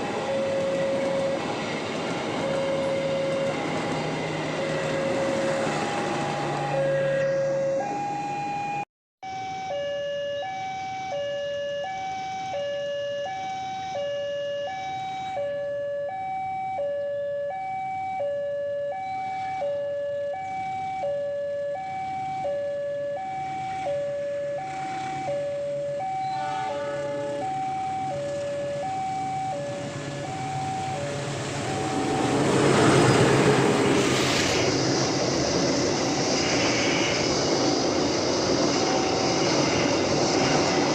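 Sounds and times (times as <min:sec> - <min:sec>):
train passing: 0:00.0 - 0:08.8, 0:23.3 - 0:40.9
two-tone crossing alarm: 0:00.0 - 0:33.5.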